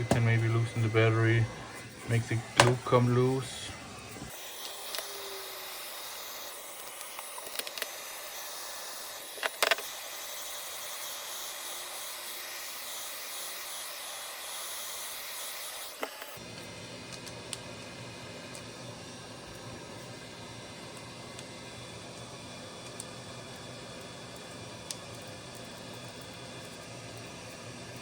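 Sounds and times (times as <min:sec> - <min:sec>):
heat gun blowing: 0:00.0 - 0:17.0.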